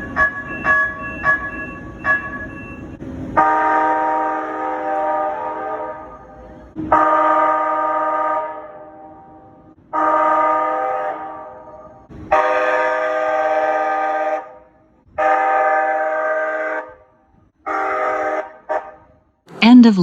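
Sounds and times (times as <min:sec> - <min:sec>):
train horn blasts: 0:03.4 - 0:09.3, 0:10.0 - 0:17.1, 0:17.7 - 0:19.0.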